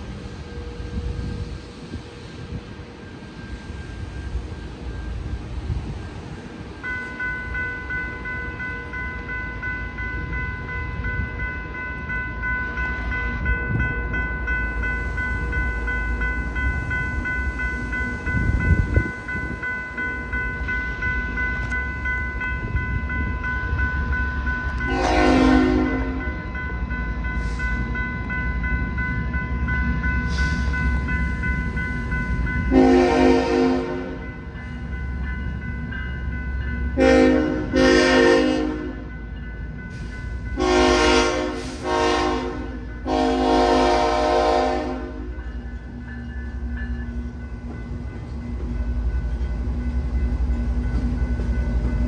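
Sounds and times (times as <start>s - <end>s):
diesel train rumble: 0.0s - 52.0s
crossing warning bell ringing: 2.3s - 52.0s
train horn blasts: 24.9s - 26.4s, 32.7s - 34.2s, 37.0s - 39.1s, 40.6s - 45.3s.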